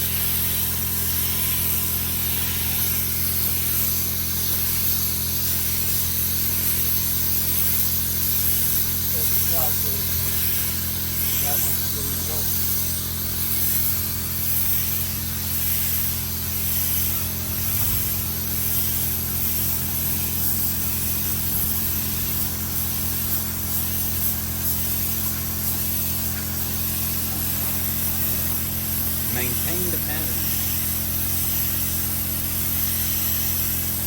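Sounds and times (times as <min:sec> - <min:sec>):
spray gun hissing: 0:00.0 - 0:34.0
low mechanical hum: 0:07.4 - 0:34.0.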